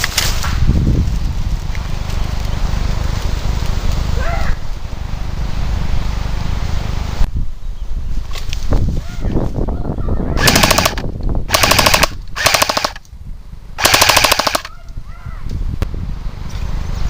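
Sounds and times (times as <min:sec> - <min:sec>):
airsoft guns firing bursts: 0:10.4 - 0:13.0, 0:13.8 - 0:14.7.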